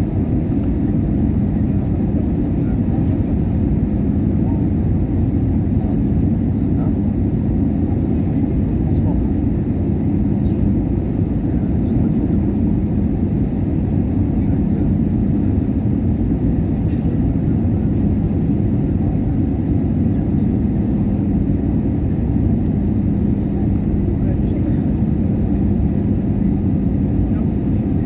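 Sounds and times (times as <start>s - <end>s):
airliner cabin engine rumble: 0.0s - 28.0s
constant low hum: 0.0s - 28.0s.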